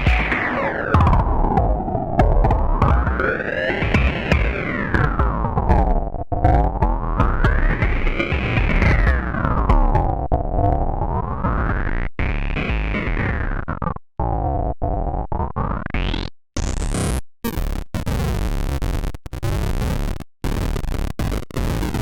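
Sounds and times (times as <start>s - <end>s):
bit-crushed synthesizer music: 0.0s - 5.6s.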